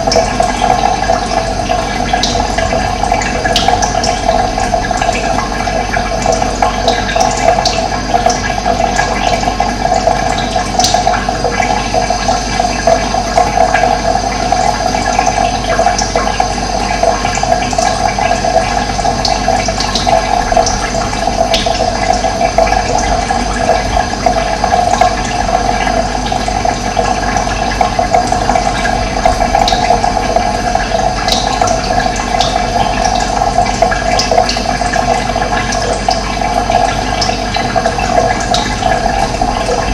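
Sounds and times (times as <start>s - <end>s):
water rushing: 19.6s - 39.9s.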